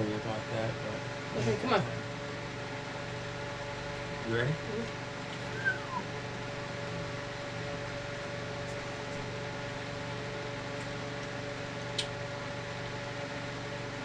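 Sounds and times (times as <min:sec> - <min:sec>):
room hum and hiss: 0:00.0 - 0:14.0
small click: 0:12.0 - 0:12.2.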